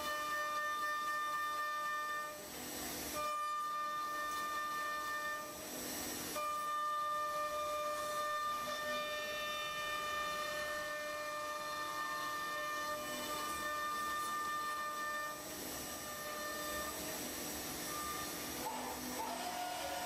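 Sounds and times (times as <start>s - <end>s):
router spindle high whine: 0.0s - 20.0s
rushing wood cutting noise: 0.0s - 20.0s.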